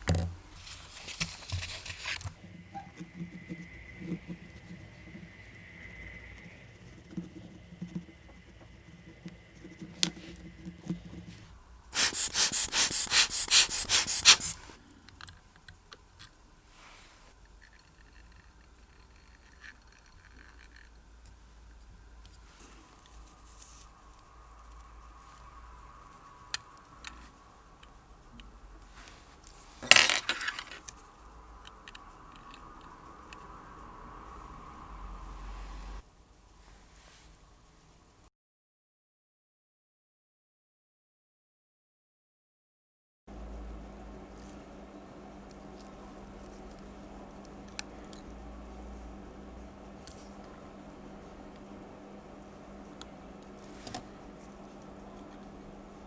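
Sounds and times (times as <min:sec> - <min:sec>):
hissing puffs of air: 0:11.9 - 0:14.8.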